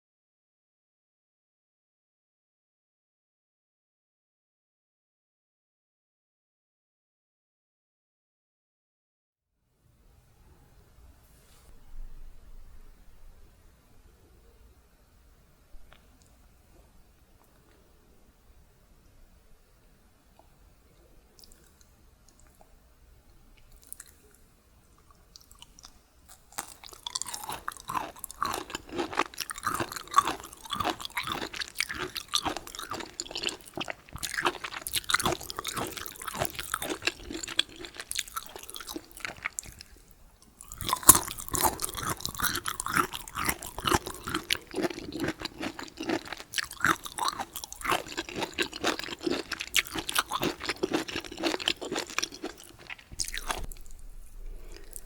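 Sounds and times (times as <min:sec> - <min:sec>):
close chewing with crunches: 0:23.6 - 0:24.4, 0:25.0 - 0:55.0
wet mouth sounds: 0:26.5 - 0:40.0, 0:40.6 - 0:55.0.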